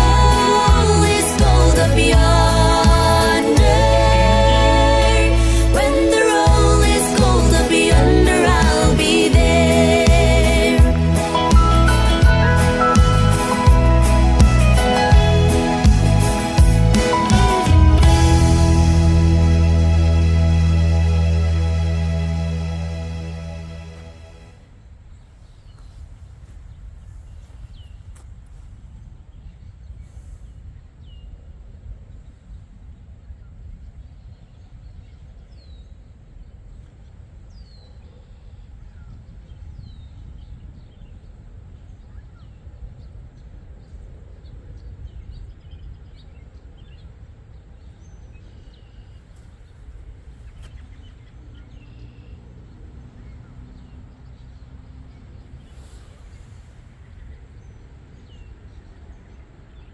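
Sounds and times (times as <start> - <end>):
steady low rumble: 0.0 - 35.4
small birds chirping: 47.8 - 59.9.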